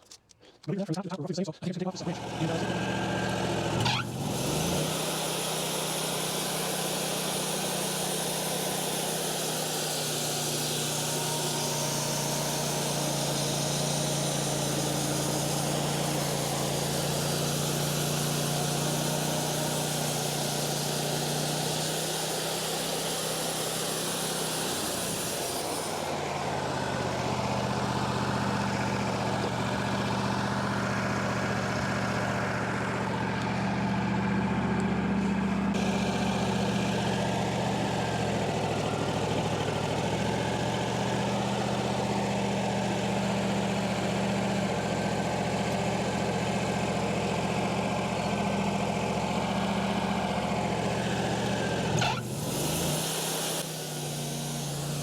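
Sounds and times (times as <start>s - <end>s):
sawmill engine running: 0.7s - 55.0s
band blade hissing through wood: 4.8s - 26.1s, 52.0s - 55.0s.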